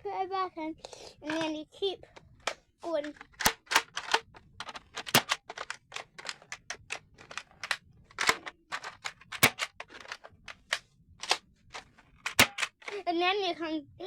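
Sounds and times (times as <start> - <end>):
toy blaster plastic clicks: 1.3 - 1.5, 2.9 - 13.0
loud plastic snaps: 2.2 - 13.0.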